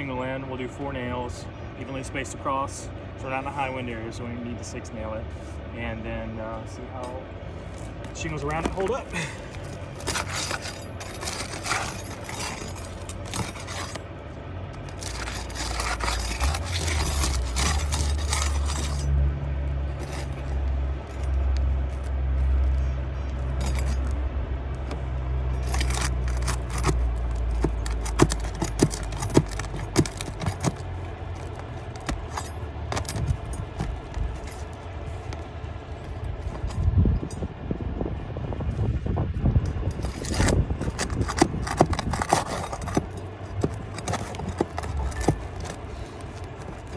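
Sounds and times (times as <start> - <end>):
low steady rumble: 0.0 - 46.9
metal tools scraping shingles: 7.0 - 35.4, 39.8 - 46.9.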